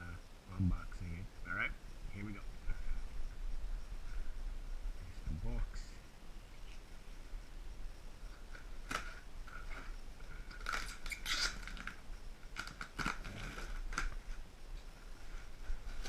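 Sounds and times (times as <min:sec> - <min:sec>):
cardboard and tape crackling: 0:08.4 - 0:14.4.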